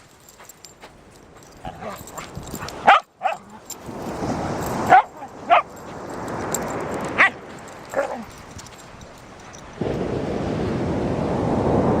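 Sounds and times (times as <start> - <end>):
dog yipping: 1.4 - 3.8, 4.6 - 9.6.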